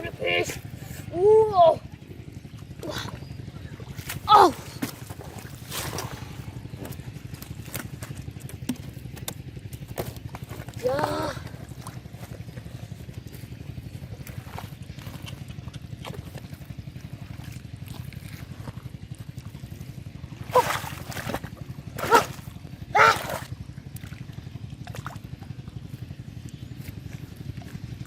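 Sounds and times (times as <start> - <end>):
muddy water sloshing and dripping: 0.0 - 28.0
rapidly pulsing low drone: 0.0 - 28.0
loud vocal exclamations: 22.9 - 23.4.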